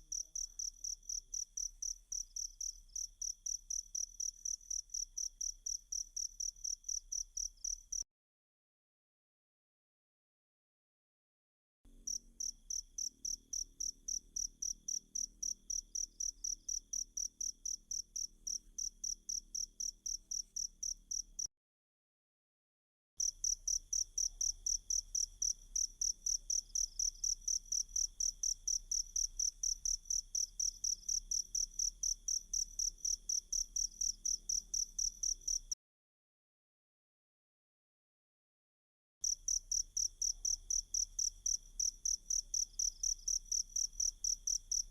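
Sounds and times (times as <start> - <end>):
cricket chirping: 0.0 - 8.0, 12.1 - 21.5, 23.2 - 35.8, 39.2 - 44.9.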